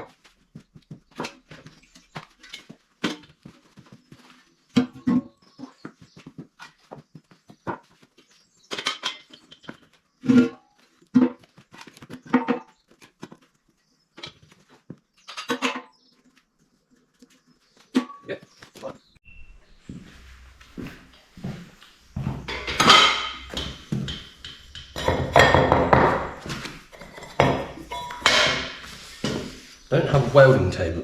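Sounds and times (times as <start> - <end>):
steel clanks and knocks: 19.3 - 30.0.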